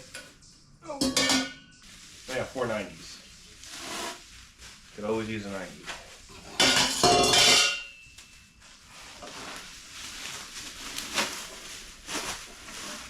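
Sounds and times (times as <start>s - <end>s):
metal pipes clanging together: 1.0s - 1.8s, 6.4s - 8.1s.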